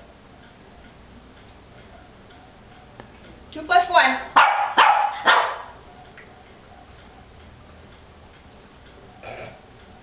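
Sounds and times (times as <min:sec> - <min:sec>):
dog barking: 0:01.9 - 0:02.5, 0:04.3 - 0:07.4.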